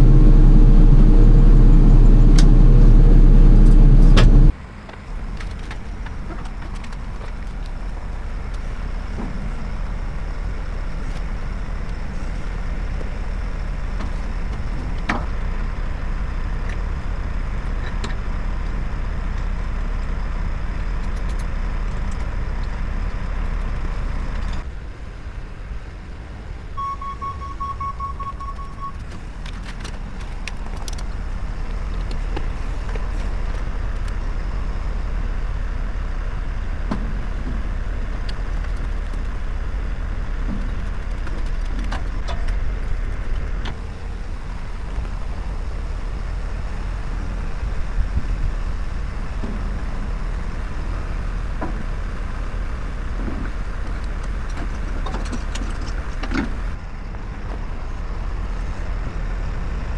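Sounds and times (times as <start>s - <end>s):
heavy equipment engine running: 0.0s - 4.6s.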